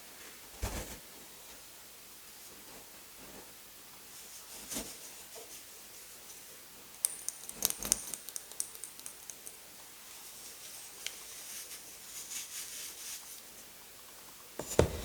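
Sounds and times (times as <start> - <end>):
soft rustle: 2.4 - 6.5, 10.0 - 13.7.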